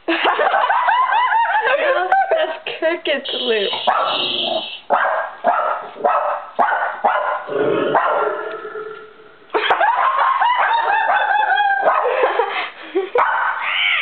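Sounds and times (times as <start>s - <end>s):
small dog barking: 3.7s - 8.4s, 9.9s - 12.1s, 13.2s - 13.6s
short rising tones: 7.6s - 9.6s.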